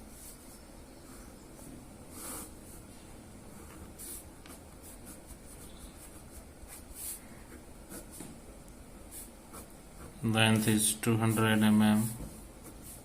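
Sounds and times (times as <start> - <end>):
low room hum: 0.0 - 13.0
pen scratching on paper: 3.5 - 8.2.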